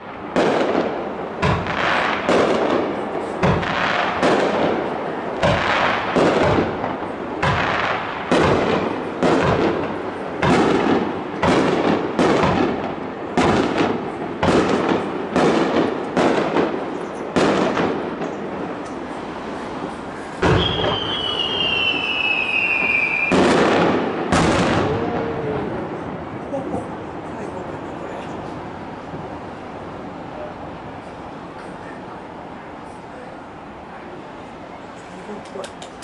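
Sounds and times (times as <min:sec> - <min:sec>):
aerial fireworks bangs: 0:00.0 - 0:18.4, 0:20.4 - 0:25.3.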